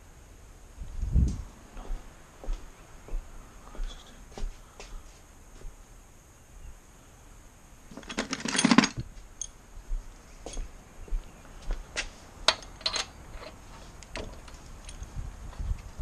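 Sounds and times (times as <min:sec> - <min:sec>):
metal tools clinking and clattering: 0:07.9 - 0:09.5, 0:12.5 - 0:13.6.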